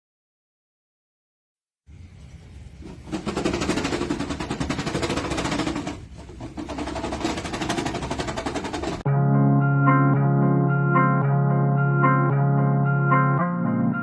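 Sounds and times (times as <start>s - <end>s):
lawn mower engine running: 2.8s - 9.0s.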